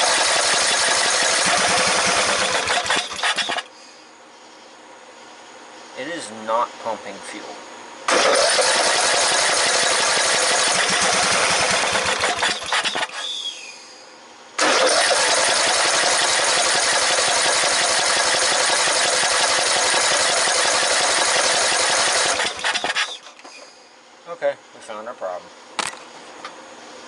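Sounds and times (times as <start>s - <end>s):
engine cranking on starter: 0.0s - 3.7s, 8.1s - 13.3s, 14.6s - 23.7s.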